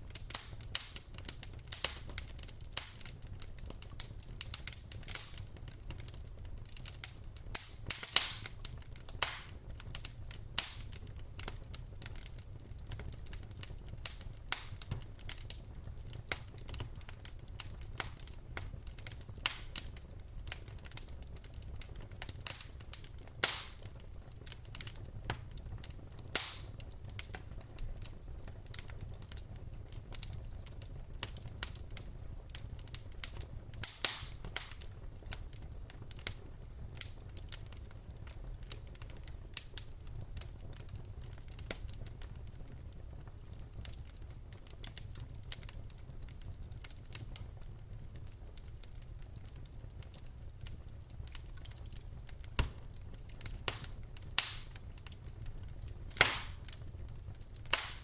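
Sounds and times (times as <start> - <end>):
low rumble of flames: 0.0 - 58.0
wood fire crackling: 0.0 - 58.0.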